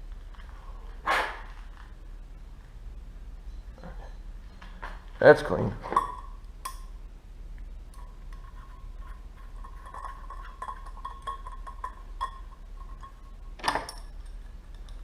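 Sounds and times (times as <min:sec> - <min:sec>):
faint steady tone: 0:02.0 - 0:15.0
small metal parts clinking: 0:09.9 - 0:15.0.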